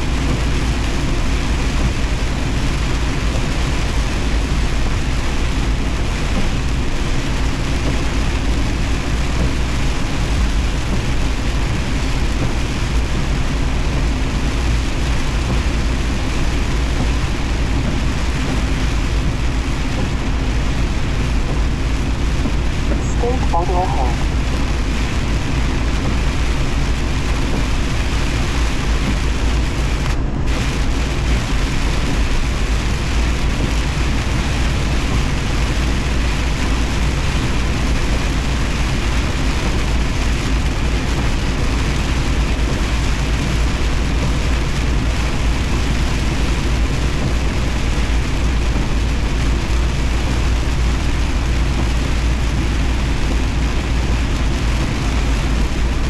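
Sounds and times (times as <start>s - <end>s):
tyres hissing on wet road: 0.0s - 56.0s
truck engine drone: 4.0s - 35.1s.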